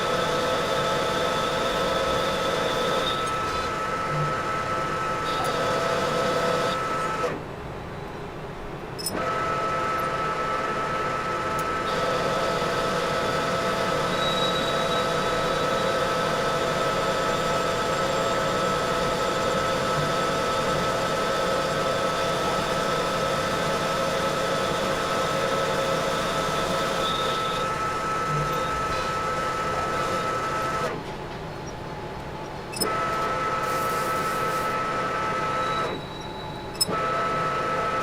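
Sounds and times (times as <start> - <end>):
metal lathe whining: 0.0 - 7.4, 9.0 - 31.0, 32.8 - 38.0.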